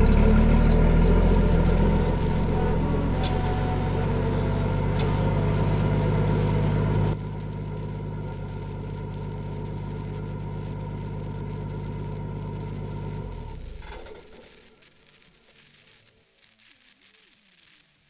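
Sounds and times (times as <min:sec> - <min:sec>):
diesel engine running: 0:00.0 - 0:14.4.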